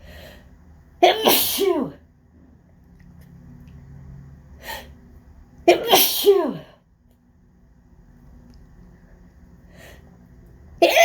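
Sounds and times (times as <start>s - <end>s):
person sneezing: 1.0s - 2.0s, 5.7s - 6.8s.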